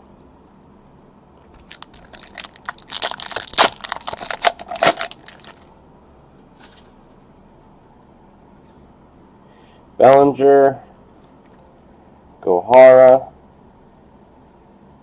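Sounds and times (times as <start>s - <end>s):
wrapper crinkling and tearing: 1.6s - 5.7s.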